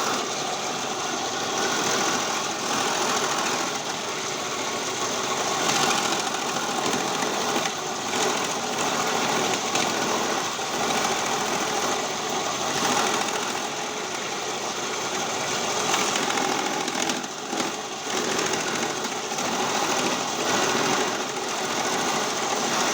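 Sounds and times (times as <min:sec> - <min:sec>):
shredding machine running: 0:00.0 - 0:22.9.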